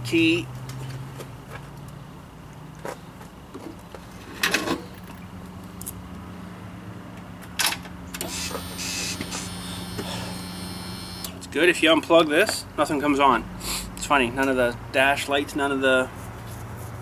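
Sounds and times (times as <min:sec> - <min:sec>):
steady low hum: 0:08.2 - 0:11.4.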